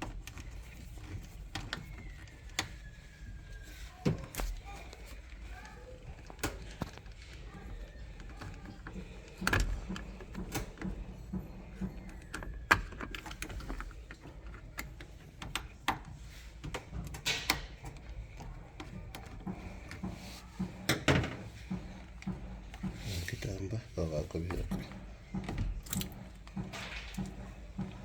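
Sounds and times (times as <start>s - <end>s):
tools knocking on machine parts: 8.3s - 28.0s.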